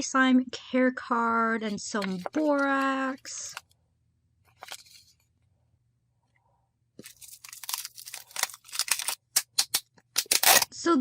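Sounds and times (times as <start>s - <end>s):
slime package crackling: 7.0s - 10.7s.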